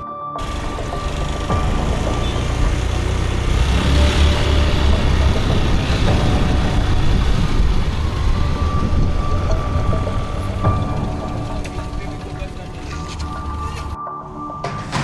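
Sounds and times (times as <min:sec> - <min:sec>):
street traffic rumble: 0:00.4 - 0:14.9.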